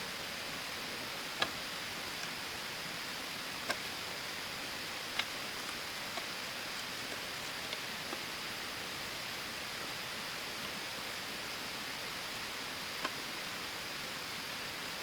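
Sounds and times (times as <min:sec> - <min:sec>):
faint ticks: 0:12.9 - 0:13.3.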